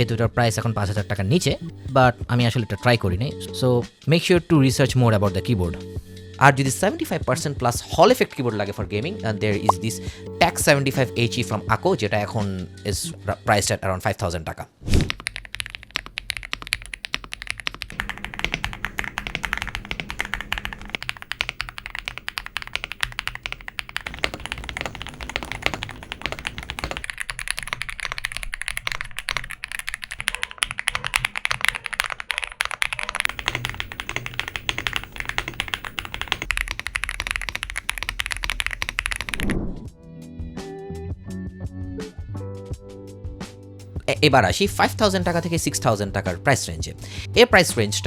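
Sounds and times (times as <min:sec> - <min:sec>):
mechanical keyboard typing: 0:15.0 - 0:39.5.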